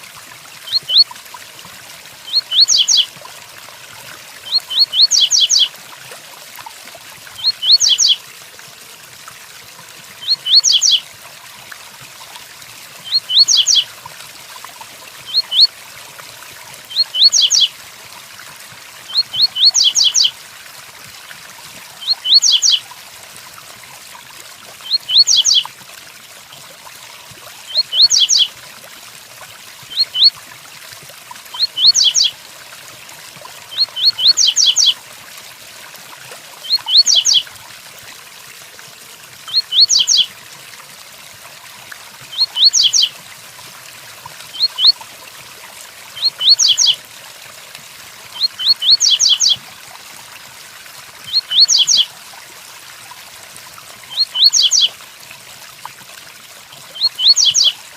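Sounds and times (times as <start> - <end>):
rain hiss: 0.0 - 5.8
bird whistled song: 0.7 - 1.1, 2.3 - 3.1, 4.5 - 5.7, 7.4 - 8.2, 10.2 - 11.0, 13.1 - 13.8, 15.3 - 15.7, 16.9 - 17.7, 19.1 - 20.3, 22.0 - 22.8, 24.9 - 25.6, 27.7 - 28.5, 29.9 - 30.3, 31.6 - 32.3, 33.7 - 35.0, 36.6 - 37.4, 39.5 - 40.3, 42.3 - 43.1, 44.6 - 45.0, 46.2 - 47.0, 48.4 - 49.6, 51.3 - 52.1, 54.1 - 54.9, 57.0 - 57.8.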